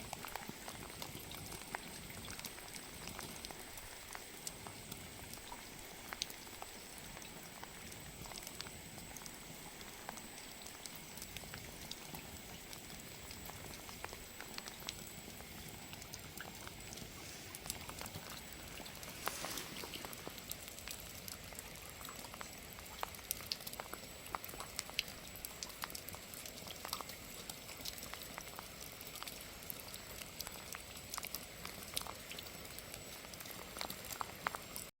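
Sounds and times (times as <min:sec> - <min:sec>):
wood fire crackling: 0:00.0 - 0:34.9.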